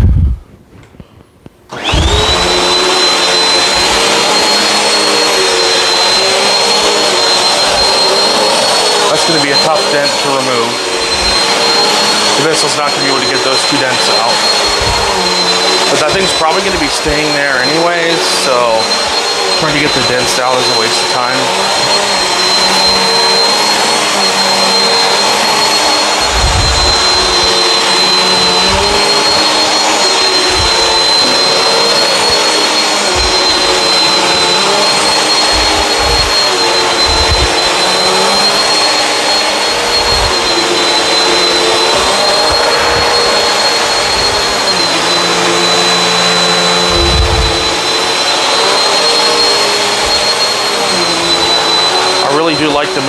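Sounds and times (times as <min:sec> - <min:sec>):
vacuum cleaner motor whining: 0:00.0 - 0:53.0
vacuum thumps: 0:26.1 - 0:37.7, 0:46.9 - 0:47.8.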